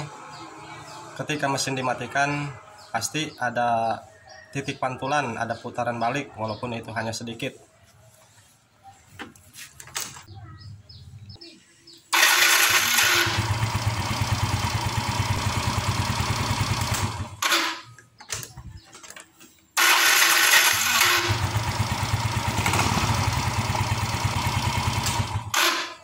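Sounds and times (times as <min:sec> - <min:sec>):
scooter engine running: 0:12.1 - 0:17.8, 0:19.8 - 0:26.0.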